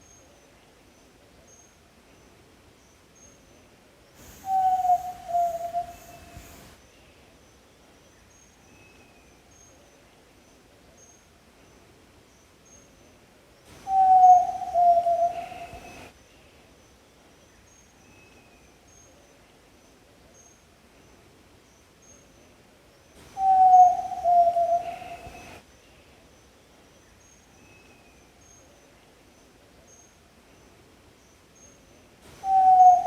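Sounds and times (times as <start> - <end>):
faint high chirps: 4.2 - 7.0
low whistled bird call: 4.3 - 6.6, 13.8 - 16.1, 23.4 - 25.6, 32.4 - 33.0.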